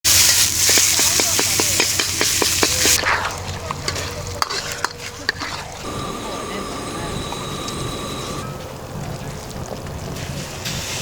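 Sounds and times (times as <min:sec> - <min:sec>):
food sizzling in a pan: 0:00.0 - 0:03.0
utensil clicking and scraping pan: 0:00.7 - 0:05.9.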